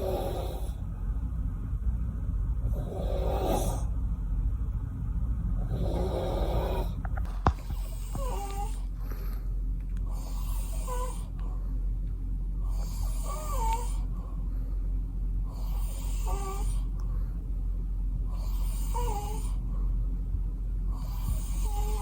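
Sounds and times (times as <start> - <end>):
man snoring: 0.0 - 0.8, 2.6 - 3.9, 5.6 - 7.0, 7.7 - 8.9, 10.1 - 11.4, 12.6 - 14.2, 15.5 - 16.9, 18.3 - 19.6, 20.9 - 22.0
steady low hum: 0.0 - 22.0.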